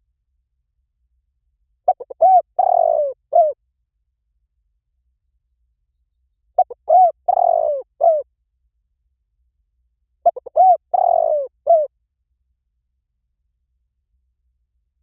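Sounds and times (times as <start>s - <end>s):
dove cooing: 1.9s - 3.6s, 6.6s - 8.3s, 10.2s - 11.9s.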